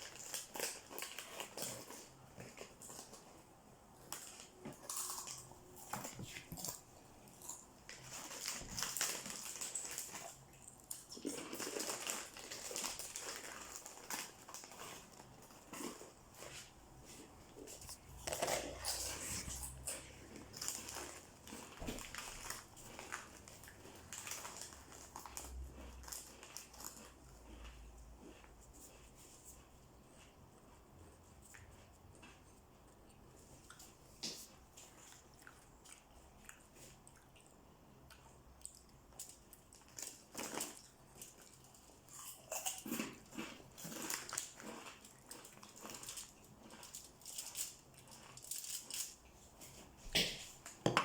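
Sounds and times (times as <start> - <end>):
crinkling and rustling: 0.0 - 7.0, 7.8 - 30.8.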